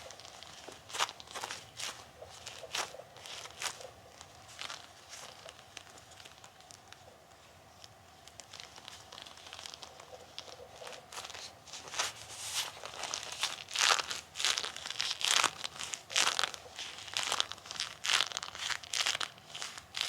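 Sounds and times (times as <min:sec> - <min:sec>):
rubber gloves rubbing: 0:00.0 - 0:20.0.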